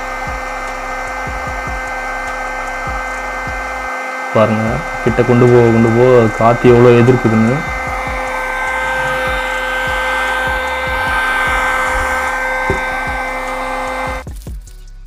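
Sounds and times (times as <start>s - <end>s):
high-pitched motor whine: 0.0s - 14.3s
rushing air: 7.7s - 14.2s.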